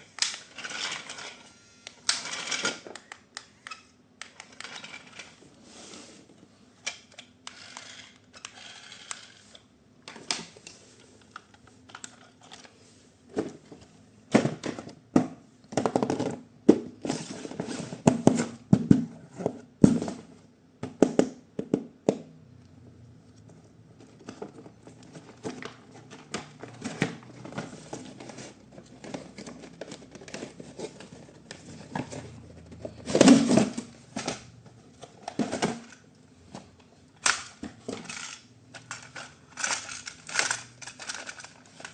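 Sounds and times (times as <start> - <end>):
plastic clatter: 24.0 - 41.9
plastic toy parts clicking: 37.2 - 41.9.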